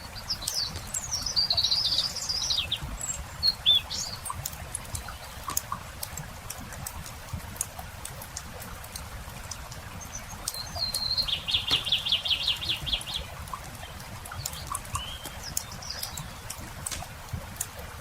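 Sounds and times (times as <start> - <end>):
songbird trilling: 0.0 - 4.4, 10.1 - 13.4, 14.4 - 16.5
campfire crackling and popping: 0.0 - 18.0
faint bird chirps: 10.0 - 16.6.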